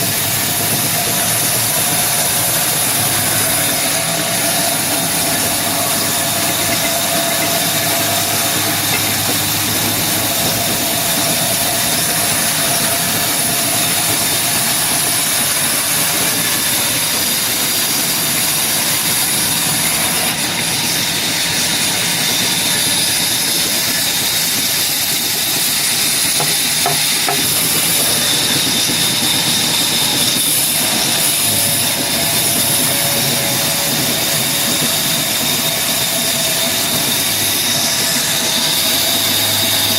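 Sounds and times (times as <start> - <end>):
power saw cutting wood: 0.0 - 39.9.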